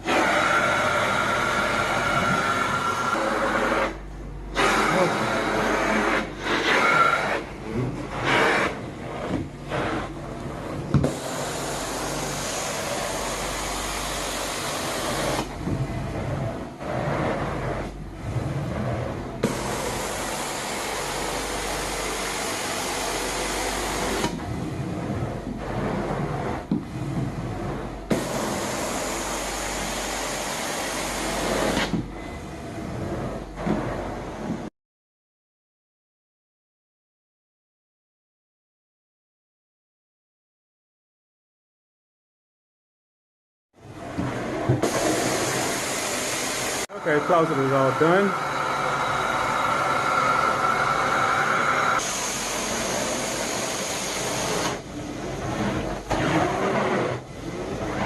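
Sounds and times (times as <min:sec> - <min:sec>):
carpet cleaner suction rushing: 0:00.0 - 0:32.0, 0:44.0 - 0:58.0
carpet extraction wand suction: 0:00.1 - 0:07.5, 0:08.1 - 0:10.1, 0:44.8 - 0:46.9, 0:50.0 - 0:54.8.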